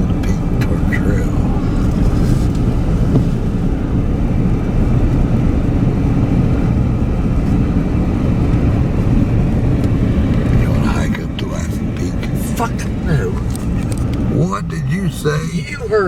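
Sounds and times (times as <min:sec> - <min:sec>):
car road and engine rumble: 0:00.0 - 0:16.0.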